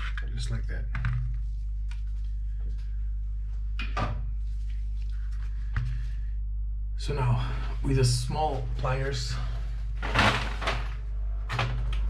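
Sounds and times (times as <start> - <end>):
low electrical hum: 0.0 - 12.0
plastic parts scraping: 10.0 - 12.0.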